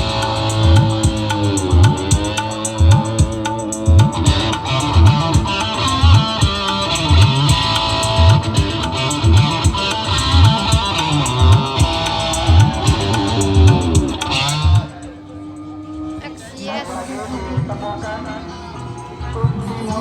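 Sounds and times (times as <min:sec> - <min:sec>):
heavy bass drum beat: 0:00.0 - 0:15.1
loud music over sound system: 0:00.0 - 0:15.2, 0:16.2 - 0:20.0.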